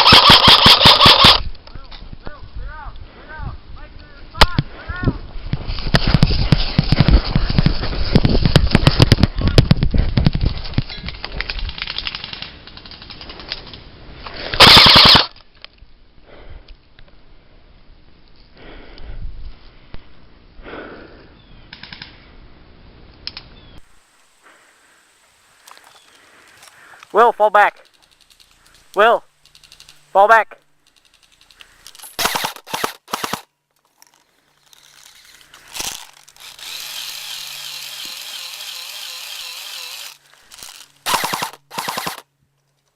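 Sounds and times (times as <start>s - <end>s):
airsoft guns firing: 14.6s - 15.3s, 32.2s - 33.5s, 41.1s - 42.2s.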